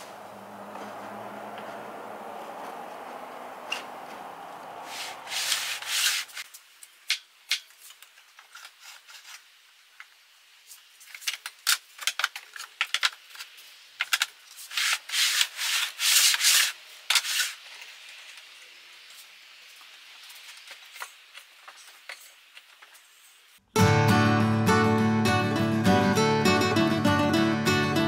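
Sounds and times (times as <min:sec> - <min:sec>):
low steady hum: 0:00.0 - 0:06.0
rubbing and scraping strokes: 0:04.8 - 0:06.5, 0:14.5 - 0:17.7.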